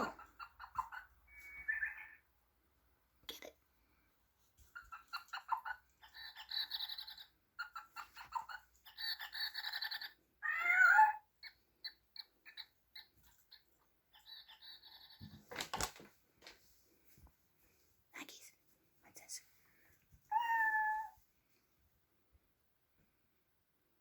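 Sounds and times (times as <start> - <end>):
cat meowing: 9.8 - 11.3, 20.3 - 21.2.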